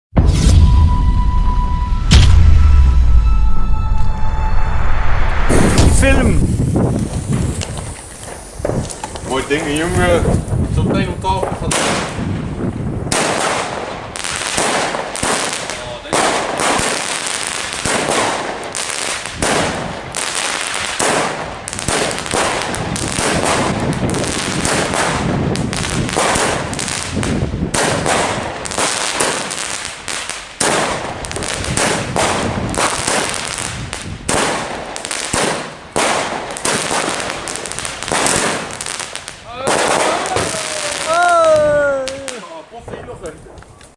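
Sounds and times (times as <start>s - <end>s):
firework cake firing shots: 11.3s - 12.3s, 13.1s - 41.2s.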